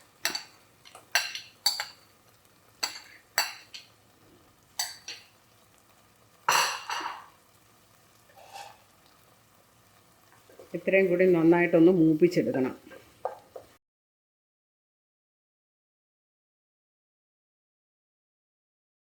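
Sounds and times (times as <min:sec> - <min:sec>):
spoon scraping a bowl: 0:08.4 - 0:08.8.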